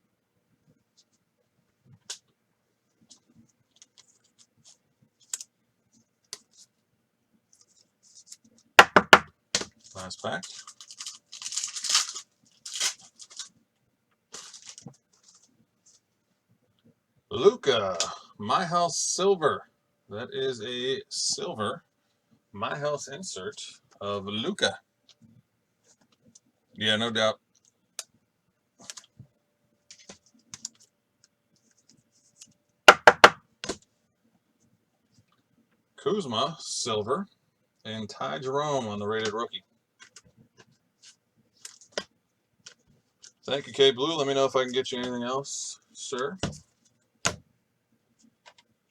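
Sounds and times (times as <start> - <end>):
cards tapping and ticking: 8.8 - 9.3, 32.9 - 33.4
wrapper tearing and crinkling: 10.4 - 13.5, 14.3 - 14.8.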